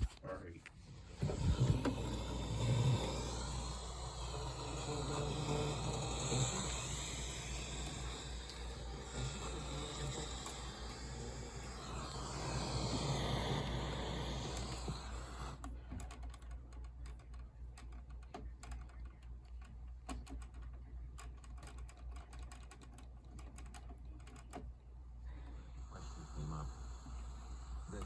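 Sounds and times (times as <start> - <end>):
steady low hum: 0.0 - 28.0
hiss: 1.1 - 15.6, 25.5 - 28.0
computer keyboard typing: 11.6 - 24.8.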